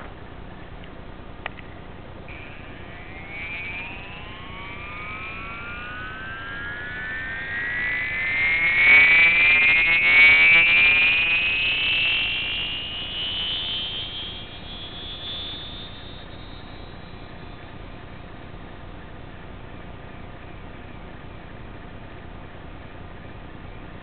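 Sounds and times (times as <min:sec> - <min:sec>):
electronic raygun tone rising: 0:02.3 - 0:18.6.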